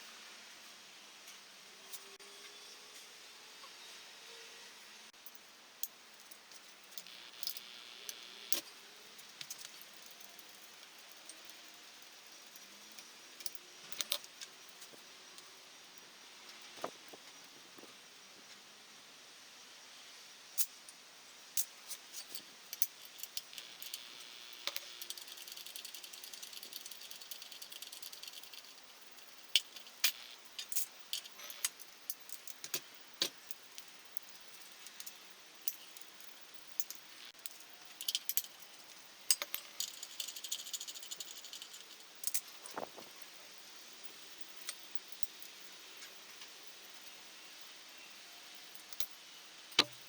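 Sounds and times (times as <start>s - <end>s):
metal tools clinking and rattling: 24.7s - 33.9s, 34.5s - 43.1s
light metallic jingling: 24.7s - 43.3s.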